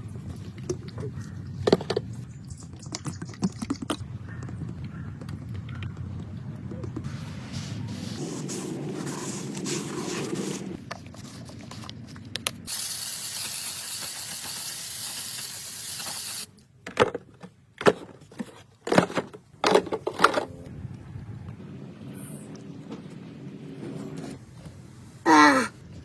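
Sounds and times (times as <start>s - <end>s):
pressurised spray hissing: 12.7s - 16.5s.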